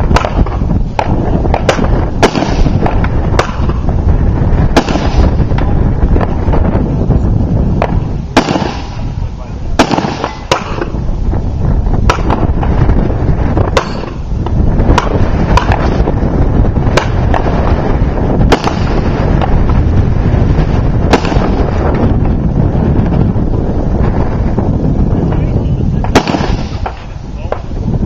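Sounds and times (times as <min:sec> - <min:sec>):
gunshots: 0:00.0 - 0:03.9, 0:04.7 - 0:05.8, 0:07.8 - 0:11.0, 0:12.0 - 0:12.9, 0:13.6 - 0:14.2, 0:14.9 - 0:16.1, 0:16.8 - 0:19.8, 0:20.6 - 0:22.0, 0:26.0 - 0:27.7
wind buffeting microphone: 0:00.0 - 0:28.0.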